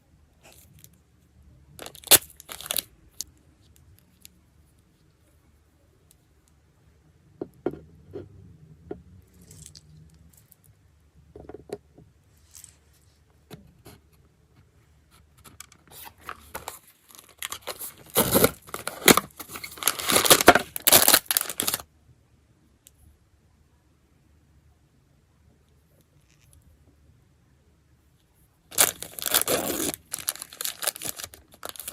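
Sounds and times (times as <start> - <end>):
packaging tearing and crinkling: 1.8 - 2.9, 16.0 - 21.8, 28.7 - 31.9
packaging taps and rustles: 16.2 - 21.8, 28.7 - 31.9.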